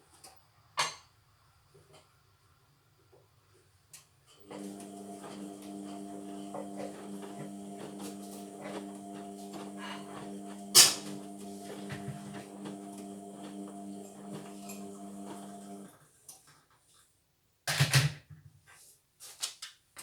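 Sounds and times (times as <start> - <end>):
washing machine motor humming: 4.4 - 15.9.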